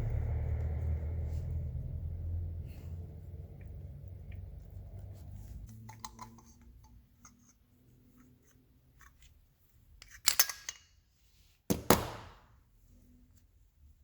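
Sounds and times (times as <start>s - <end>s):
metal handling clicks: 10.0s - 10.9s.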